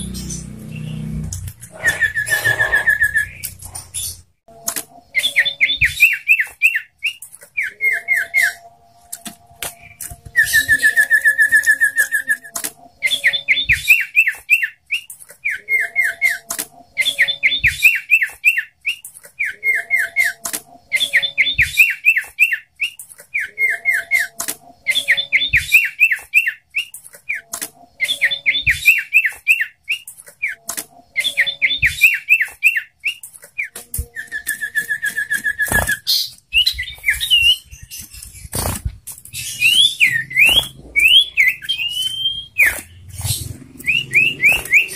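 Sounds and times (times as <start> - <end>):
songbird whistling song: 0.0 - 4.2, 5.1 - 38.5, 39.3 - 44.9
sharp clicks: 24.2 - 44.9.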